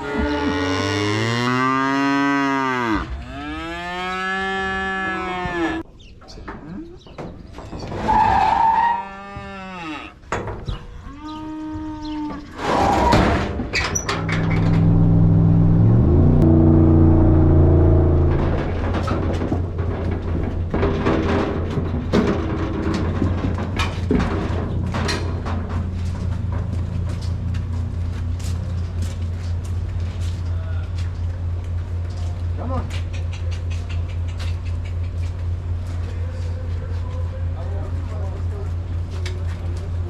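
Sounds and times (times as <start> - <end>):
cattle mooing: 0.0 - 5.8, 8.8 - 10.2.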